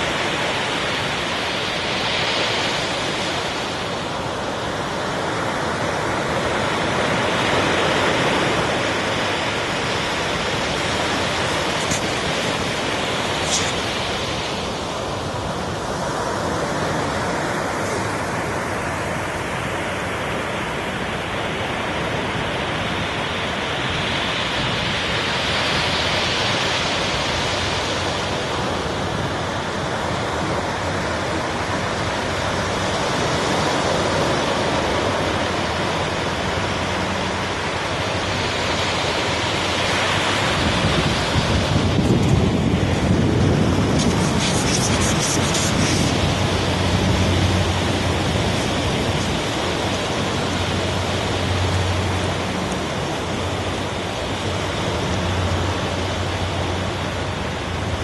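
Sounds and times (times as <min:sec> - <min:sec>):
sea surf on beach: 0:00.0 - 0:58.0
wind buffeting microphone: 0:28.2 - 0:58.0.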